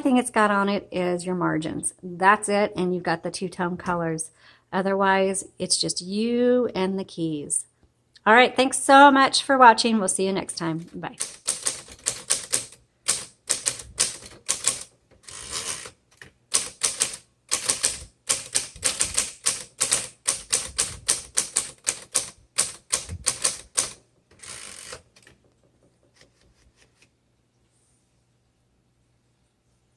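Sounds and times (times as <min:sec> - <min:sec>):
typewriter key strikes: 0:11.2 - 0:14.9, 0:16.5 - 0:25.3
typewriter rasping: 0:11.2 - 0:26.4.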